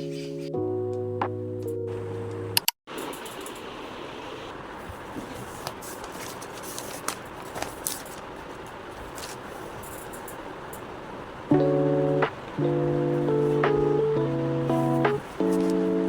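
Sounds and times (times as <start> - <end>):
background music: 0.0 - 2.6, 11.5 - 16.0
steady room noise hiss: 1.9 - 16.0.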